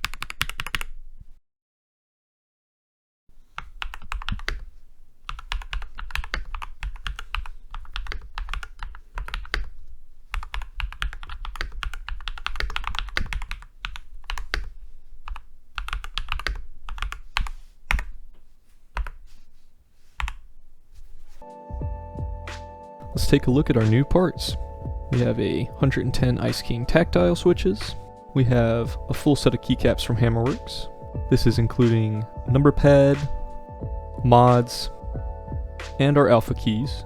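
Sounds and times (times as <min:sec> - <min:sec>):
mechanical keyboard typing: 0:00.0 - 0:01.0, 0:03.5 - 0:18.2, 0:19.0 - 0:19.2, 0:20.2 - 0:20.5.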